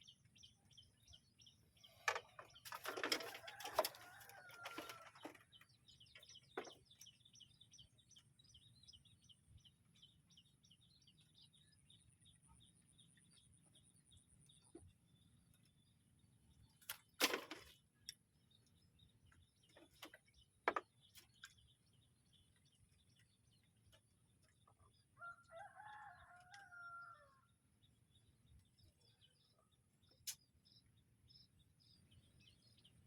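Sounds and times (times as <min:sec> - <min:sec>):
drawn-out crowing call: 0:03.1 - 0:05.3, 0:25.2 - 0:27.5.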